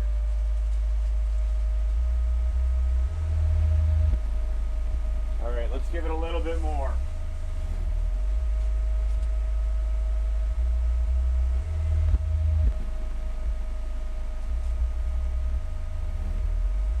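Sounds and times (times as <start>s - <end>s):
deep bass test tones: 0.0s - 17.0s
faint high whine: 2.0s - 11.2s, 12.6s - 17.0s.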